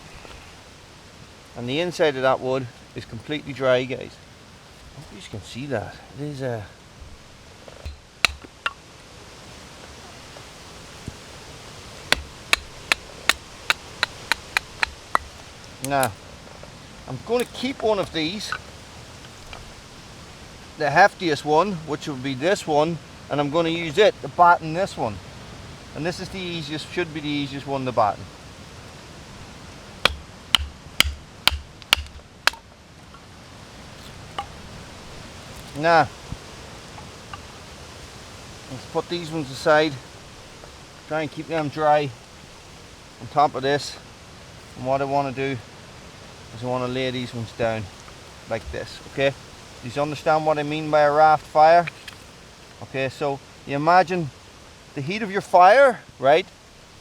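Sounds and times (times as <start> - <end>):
steady hiss: 0.0 - 57.0
wood knocks: 7.7 - 8.8, 12.1 - 16.2, 30.0 - 32.6.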